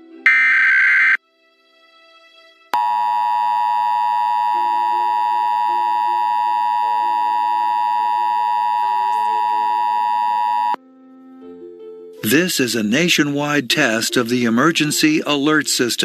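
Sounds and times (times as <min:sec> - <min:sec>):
two-tone alert tone: 0:00.3 - 0:01.2
faint melody: 0:10.8 - 0:15.6.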